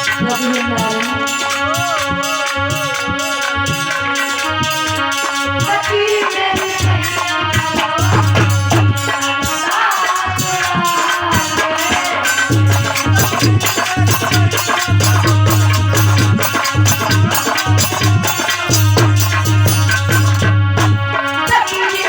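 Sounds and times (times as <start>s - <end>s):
hand drums: 0.0s - 22.0s
shaker rhythm: 0.0s - 22.0s
wavering melody: 0.0s - 22.0s.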